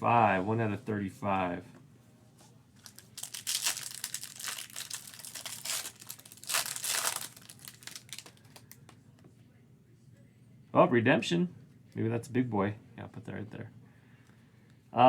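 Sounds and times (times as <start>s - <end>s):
foil wrapper crinkling and tearing: 2.8s - 8.8s.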